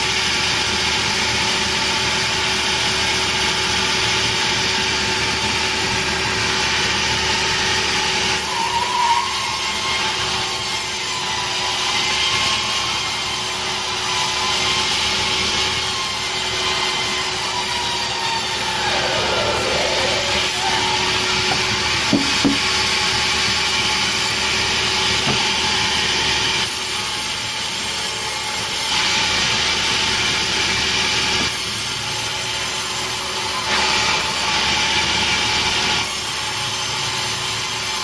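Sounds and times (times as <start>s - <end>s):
sawmill saw and engine running: 0.0s - 38.0s
wavering whine: 17.1s - 22.6s.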